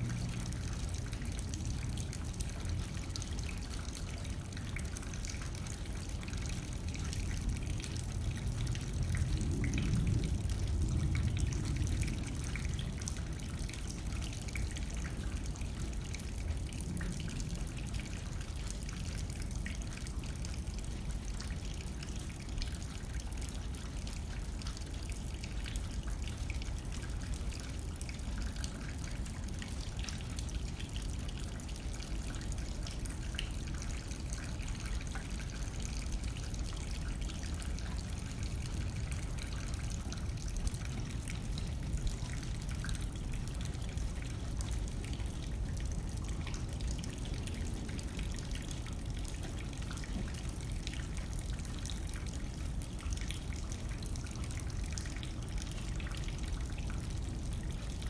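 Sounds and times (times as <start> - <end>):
low wind rumble: 0.0 - 5.0, 5.7 - 18.8
rain drops ticking on glass: 0.0 - 58.0.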